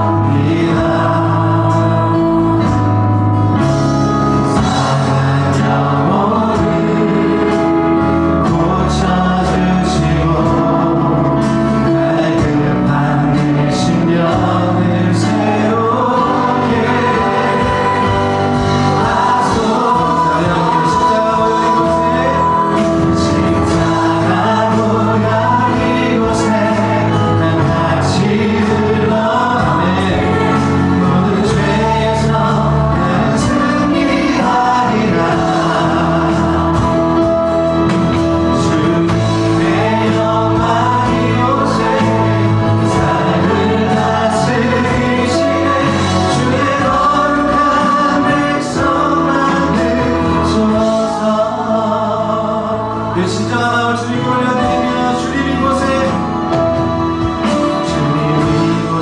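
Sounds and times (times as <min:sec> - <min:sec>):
full band accompaniment: 0:00.0 - 0:59.0
group of voices singing: 0:00.0 - 0:59.0.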